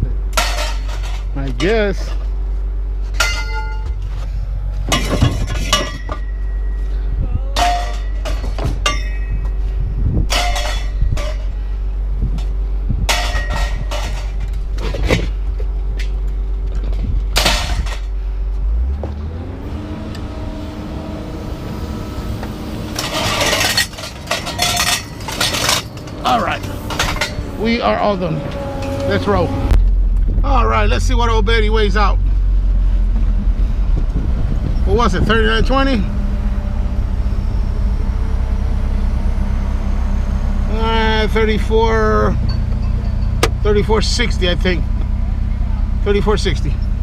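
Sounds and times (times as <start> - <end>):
low engine hum: 0.0 - 47.0
scrap metal clanking: 0.3 - 2.4, 3.0 - 18.4, 22.8 - 29.9.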